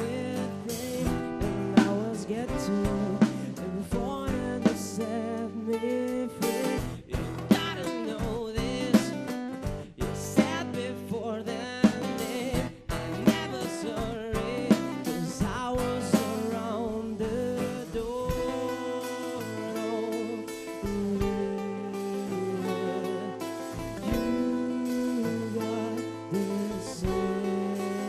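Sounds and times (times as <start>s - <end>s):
guitar and bass: 0.0s - 28.0s
person singing: 0.0s - 28.0s
sharp drum hits: 11.8s - 16.7s.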